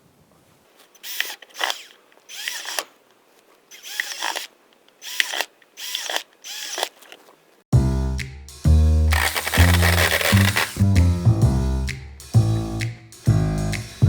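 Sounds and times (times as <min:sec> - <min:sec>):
power drill bursts: 0:00.8 - 0:03.0, 0:03.7 - 0:07.2, 0:09.1 - 0:10.8.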